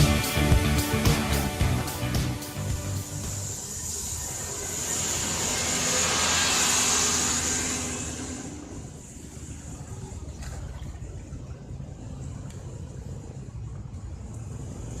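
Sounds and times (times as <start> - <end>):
bus engine running low: 11.9 - 15.0.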